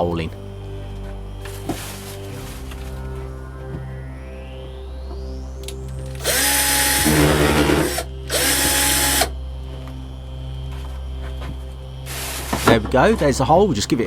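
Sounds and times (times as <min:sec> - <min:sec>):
electric drill boring into plastic: 0:06.2 - 0:09.3.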